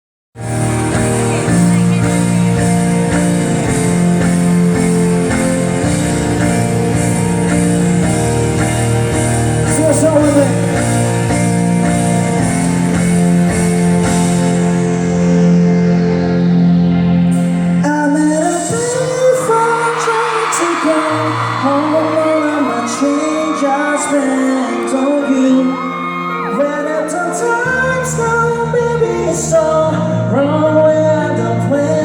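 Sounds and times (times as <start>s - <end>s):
guitar playing held chords: 0.4s - 18.0s.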